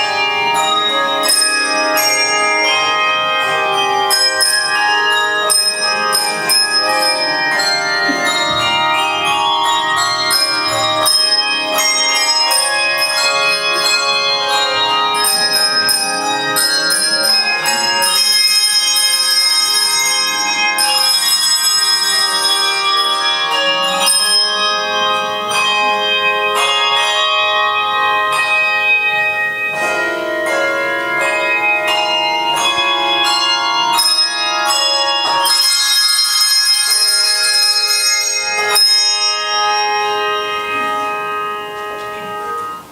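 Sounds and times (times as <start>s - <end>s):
handbell choir playing: 0.0s - 42.9s.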